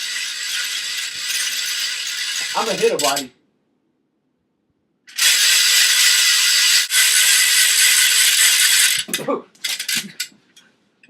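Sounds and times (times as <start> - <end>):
ratchet noisemaker rasping: 0.0 - 3.3, 5.1 - 10.3.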